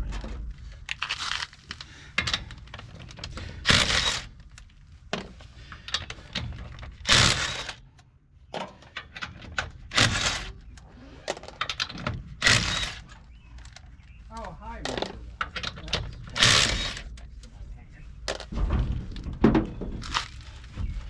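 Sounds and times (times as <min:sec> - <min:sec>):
metal tools clinking and knocking: 0:01.0 - 0:17.3.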